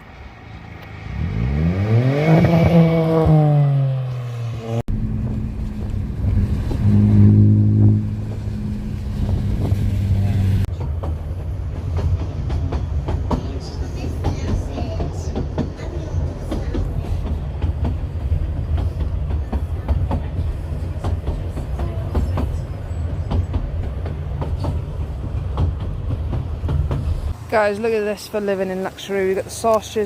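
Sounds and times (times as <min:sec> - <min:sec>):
vehicle rumble: 0:00.0 - 0:30.0
knocks and rattles: 0:10.7 - 0:27.4.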